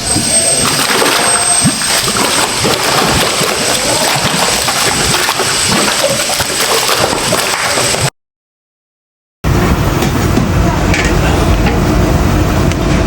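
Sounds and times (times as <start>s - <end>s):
liquid splashing and sloshing: 0.0s - 8.1s.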